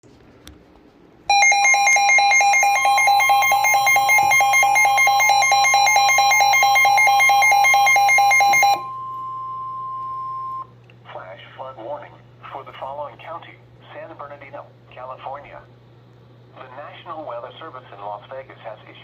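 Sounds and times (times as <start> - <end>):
alternating electronic pulsing beep: 1.3 - 10.7.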